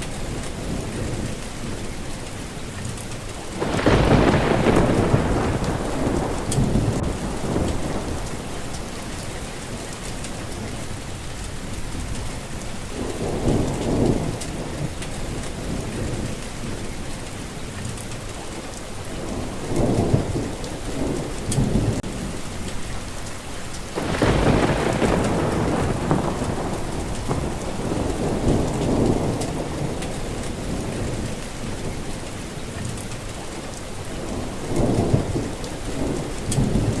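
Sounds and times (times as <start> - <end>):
steady rain: 0.0 - 37.0
thunder rumbling: 3.2 - 37.0
loud thunderclap: 3.6 - 10.8, 12.0 - 16.9, 19.2 - 22.2, 23.9 - 32.0, 34.2 - 37.0.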